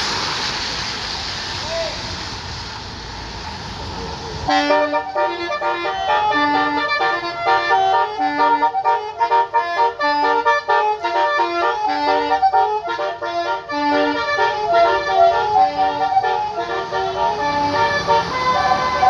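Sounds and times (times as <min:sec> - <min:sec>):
bus air horn playing a tune: 0:04.5 - 0:19.0.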